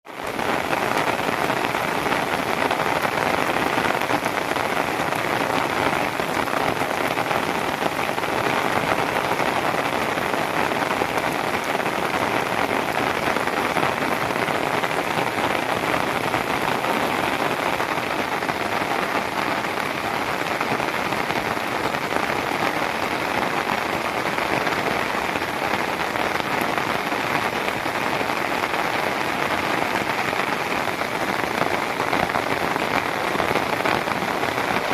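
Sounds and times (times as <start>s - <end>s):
heavy rain hissing: 0.2s - 34.9s.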